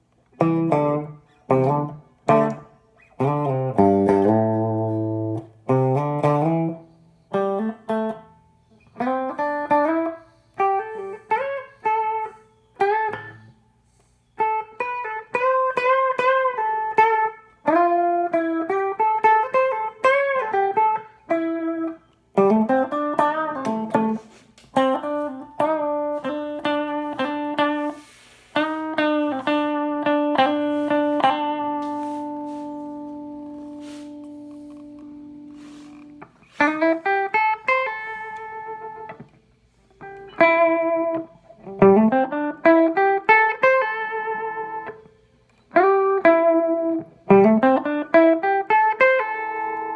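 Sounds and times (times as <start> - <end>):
electric guitar with string bends: 0.0 - 49.9
electric guitar chord ringing: 14.4 - 39.3, 40.0 - 49.9.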